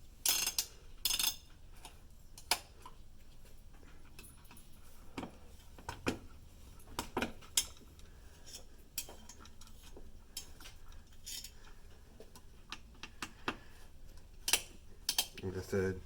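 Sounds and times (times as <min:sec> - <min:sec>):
screwdriver clicking on metal screws: 0:14.4 - 0:15.5.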